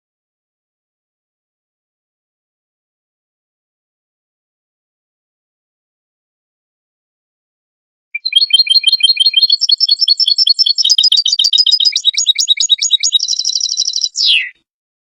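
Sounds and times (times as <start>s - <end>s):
goldfinch singing: 8.2s - 14.5s.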